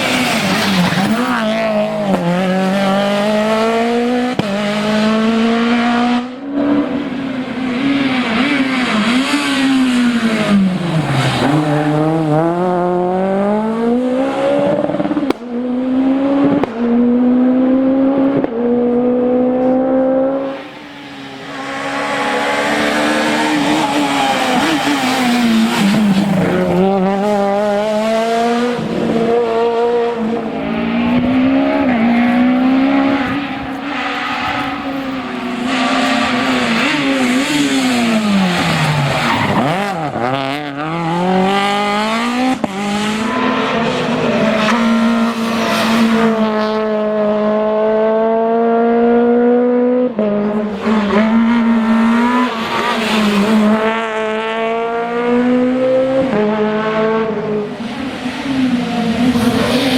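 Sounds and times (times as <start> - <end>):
rally car engine revving: 0.0 - 59.9
tyre squeal: 23.6 - 26.8, 30.6 - 40.2.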